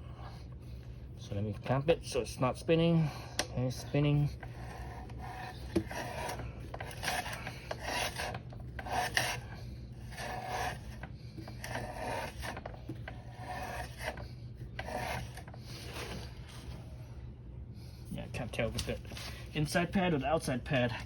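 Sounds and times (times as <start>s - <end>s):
brake pad scraping disc: 3.4s - 16.8s.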